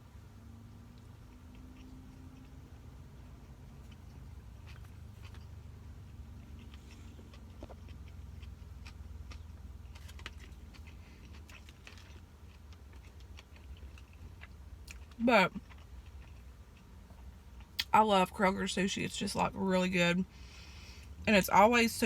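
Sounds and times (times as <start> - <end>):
steady low hum: 0.0 - 22.0
person chewing: 0.8 - 17.9.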